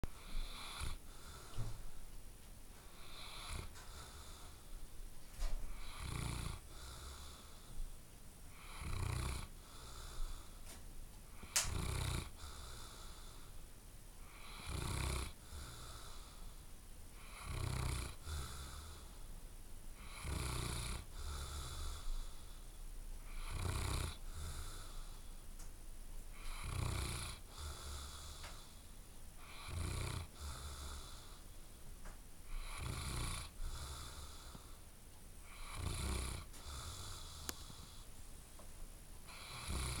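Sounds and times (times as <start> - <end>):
dog snoring loudly: 0.2 - 1.5, 3.0 - 4.5, 5.7 - 7.7, 8.5 - 10.4, 11.4 - 13.4, 14.2 - 16.4, 17.2 - 19.1, 20.0 - 22.5, 23.3 - 25.2, 26.3 - 28.8, 29.4 - 31.4, 32.5 - 34.8, 35.4 - 38.0, 39.3 - 40.0.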